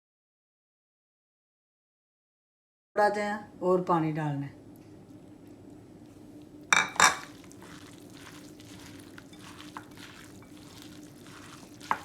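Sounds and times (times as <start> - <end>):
wet batter stirring: 6.8 - 12.0.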